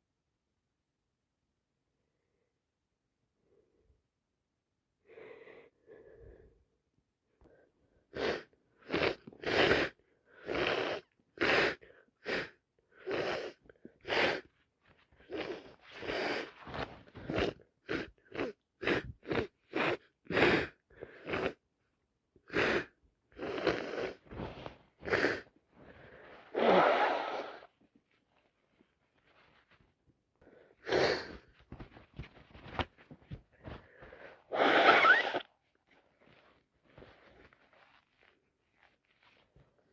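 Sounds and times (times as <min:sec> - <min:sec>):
woman sniffing and sneezing: 0:08.1 - 0:21.6, 0:22.4 - 0:27.8, 0:30.7 - 0:31.6, 0:33.6 - 0:35.5.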